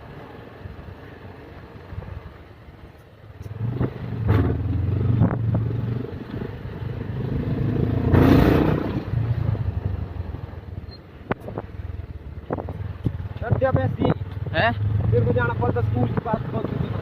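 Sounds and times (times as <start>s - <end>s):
motorcycle engine running: 4.0s - 17.0s.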